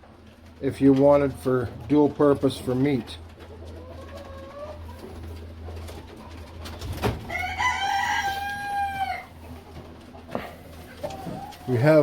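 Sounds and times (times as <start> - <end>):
rooster crowing: 7.2 - 9.4.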